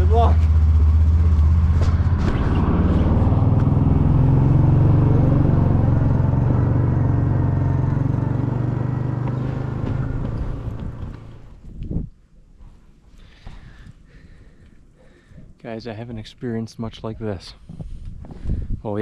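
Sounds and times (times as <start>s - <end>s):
vehicle engine pulling away: 0.0s - 11.7s.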